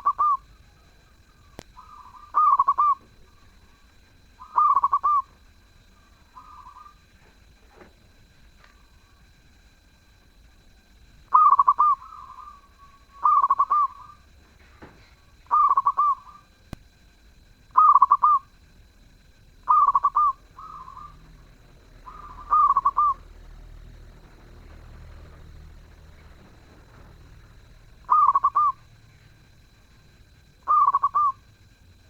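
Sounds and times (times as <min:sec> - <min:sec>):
dove cooing: 0:00.0 - 0:07.9, 0:11.3 - 0:16.5, 0:17.7 - 0:18.5, 0:19.6 - 0:30.0, 0:30.6 - 0:31.6.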